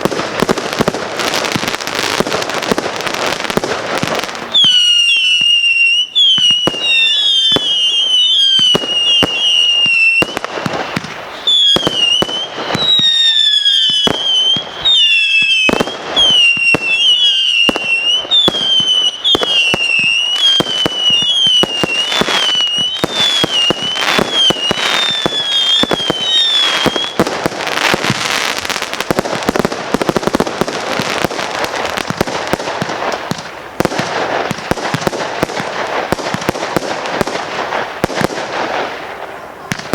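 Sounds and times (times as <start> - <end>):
firework bangs: 0.0 - 39.9
firework crackling barrage: 0.0 - 39.9
firework whistling shots: 0.0 - 39.9.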